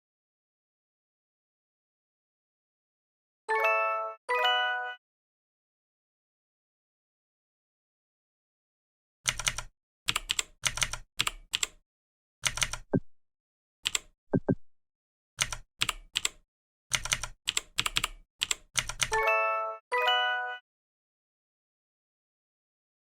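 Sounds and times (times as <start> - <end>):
keyboard typing: 9.3 - 11.8, 12.4 - 13.0, 13.8 - 14.6, 15.4 - 19.2.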